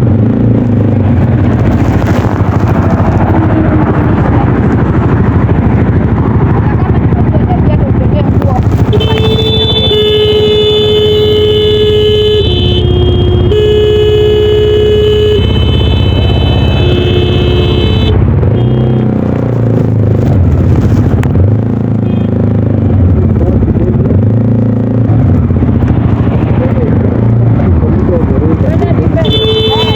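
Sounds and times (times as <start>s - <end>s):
motorcycle engine accelerating: 0.0s - 29.9s
vehicle horn two-pitch: 8.9s - 19.0s, 29.2s - 29.9s.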